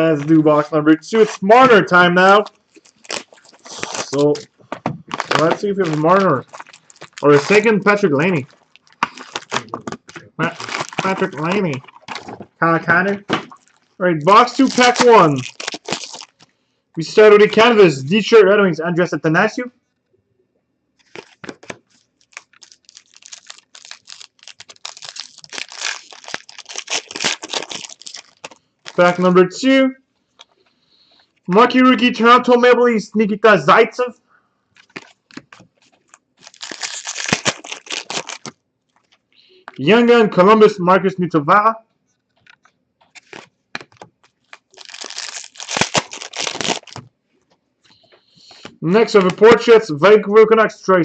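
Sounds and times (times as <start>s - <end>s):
foil wrapper tearing and crinkling: 2.4s - 4.5s, 5.1s - 12.4s, 13.5s - 16.5s, 21.0s - 29.2s, 34.8s - 39.2s, 42.4s - 47.1s.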